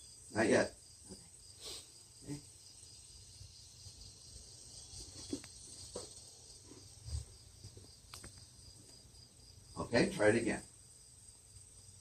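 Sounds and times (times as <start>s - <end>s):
insects chirping: 0.0s - 12.0s.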